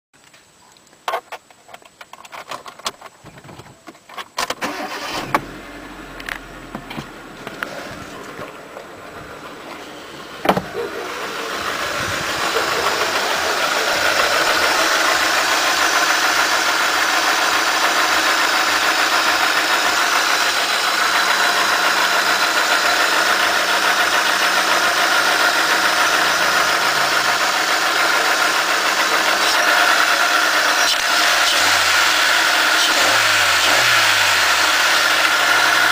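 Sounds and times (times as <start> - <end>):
car engine running loudly: 4.6 - 35.9
engine knocks: 6.2 - 32.4.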